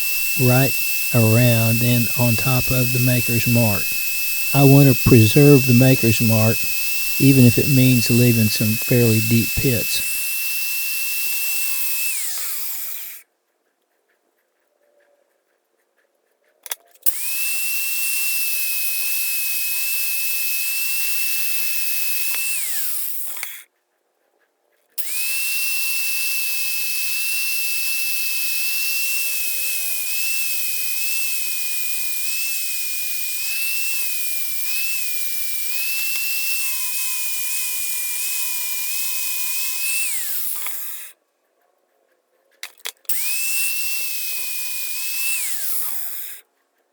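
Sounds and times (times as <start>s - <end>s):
angle grinder grinding steel: 0.0s - 1.2s, 3.8s - 4.6s.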